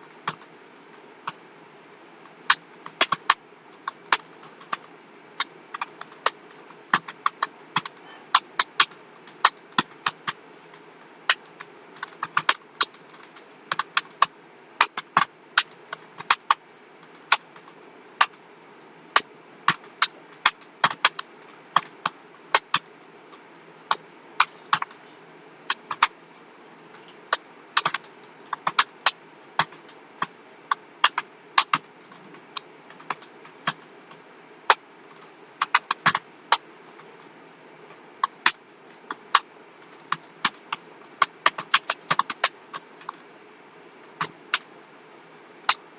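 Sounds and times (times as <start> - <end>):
steady low hum: 0.0 - 45.9
keyboard typing clicks: 2.5 - 18.4, 19.2 - 25.0, 27.0 - 33.9, 35.6 - 36.6.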